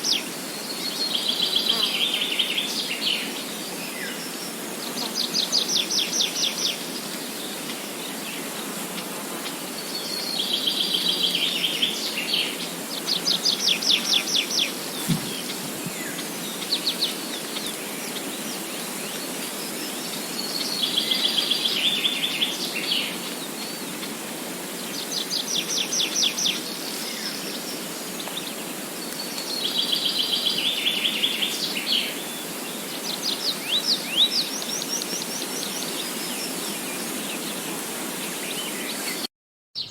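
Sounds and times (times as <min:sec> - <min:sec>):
songbirds singing trills: 0:00.0 - 0:24.2
steady background hiss: 0:00.0 - 0:39.2.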